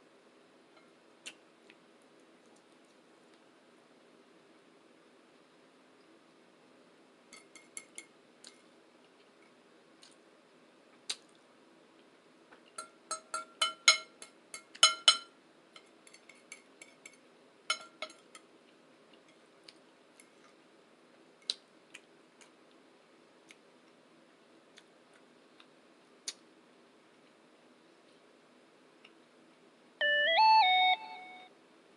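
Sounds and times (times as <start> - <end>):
faint steady hum: 0.0 - 31.9
cutlery clinking on plate: 7.3 - 8.1, 12.8 - 18.5.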